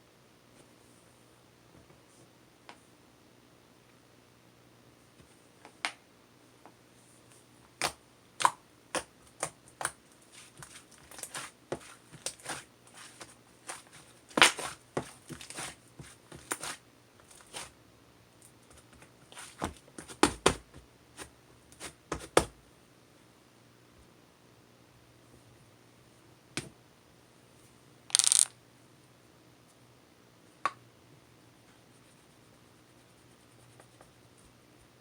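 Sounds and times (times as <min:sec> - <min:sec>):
sharp clicks and taps: 0:28.1 - 0:28.5.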